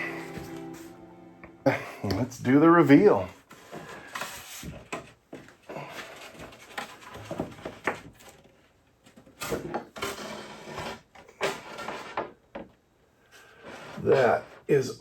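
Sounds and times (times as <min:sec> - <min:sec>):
rustling and scraping handling noises: 0:02.9 - 0:12.4, 0:13.2 - 0:14.8.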